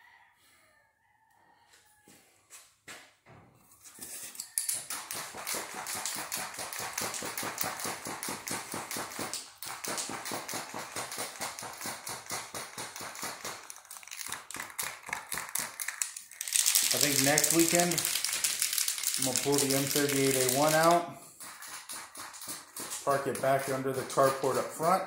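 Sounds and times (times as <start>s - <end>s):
spray can ball rattling: 4.5s - 24.7s.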